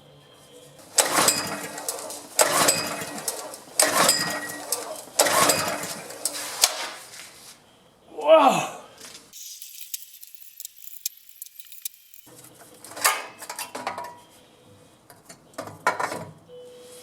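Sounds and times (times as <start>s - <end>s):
metal tools clinking: 1.0s - 6.4s, 9.4s - 12.3s.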